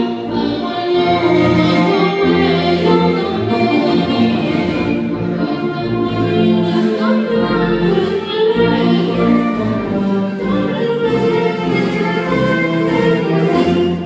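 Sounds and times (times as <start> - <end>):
choir singing: 0.0 - 14.0
orchestral music: 0.0 - 14.0.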